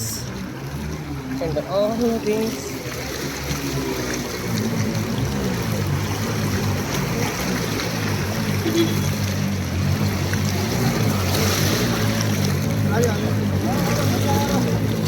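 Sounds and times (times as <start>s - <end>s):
rain: 0.0s - 15.0s
running floodwater: 0.0s - 15.0s
vehicle engine humming: 0.0s - 15.0s.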